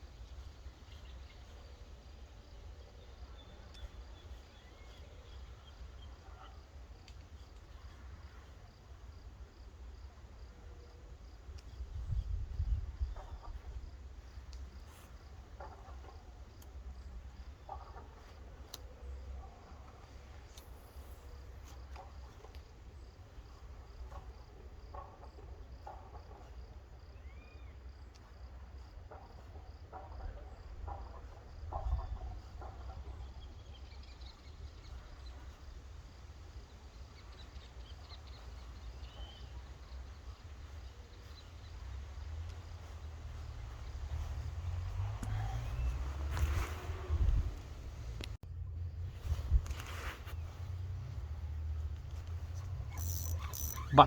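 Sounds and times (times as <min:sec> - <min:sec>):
insect chirping: 0:00.0 - 0:54.0
low rumble: 0:47.0 - 0:53.0.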